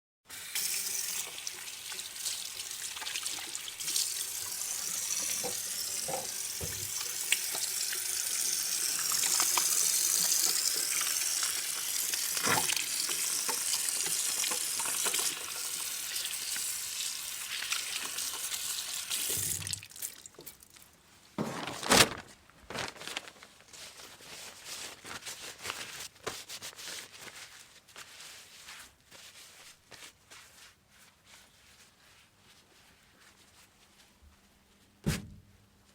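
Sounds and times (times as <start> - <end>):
tap water splashing into sink: 0.6 - 8.3, 9.0 - 15.8, 17.6 - 20.6
small wet sounds: 1.3 - 21.0.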